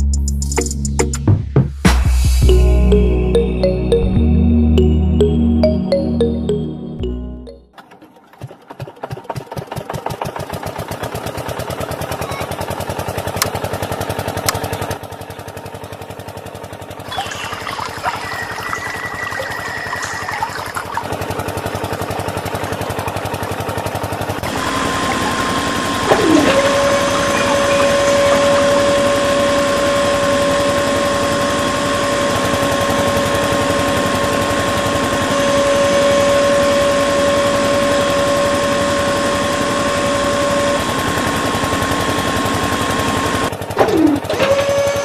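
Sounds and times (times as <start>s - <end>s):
motor spinning up: 17.0s - 45.0s
small motors whining: 17.0s - 45.0s.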